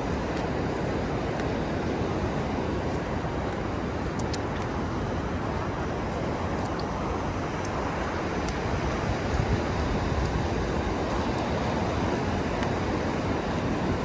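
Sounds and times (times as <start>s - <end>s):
ocean surf rumble: 0.0s - 14.0s
wind buffeting microphone: 0.0s - 14.0s
faint high clicks: 4.0s - 4.8s.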